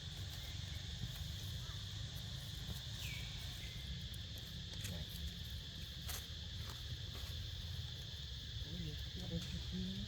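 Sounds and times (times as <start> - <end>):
insect chorus: 0.0 - 10.0.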